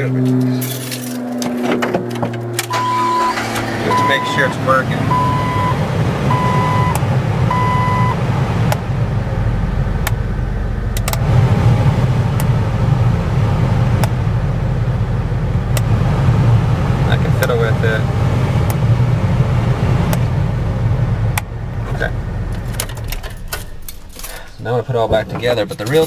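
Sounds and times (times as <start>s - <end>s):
warning chime beeps: 2.7s - 8.2s
heater blower fan hum: 2.8s - 25.6s
switch clicks: 11.0s - 11.2s.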